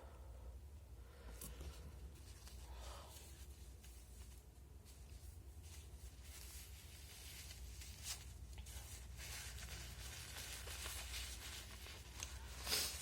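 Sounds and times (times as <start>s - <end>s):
person breathing and sniffling: 0.0s - 3.6s, 12.2s - 13.0s
soft rustling: 1.1s - 13.0s.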